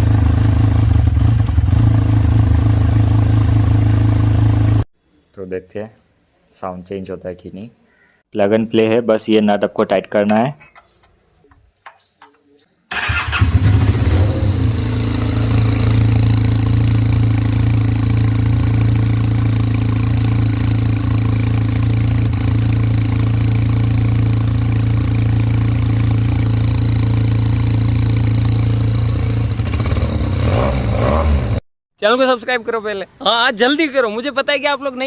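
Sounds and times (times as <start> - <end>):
motorcycle engine idling: 0.0 - 4.8, 13.1 - 30.5.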